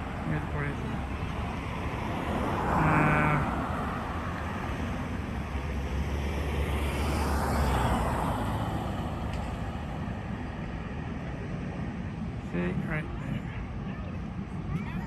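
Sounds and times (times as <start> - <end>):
car passing: 0.0 - 11.4
low rumble of traffic: 0.0 - 15.0.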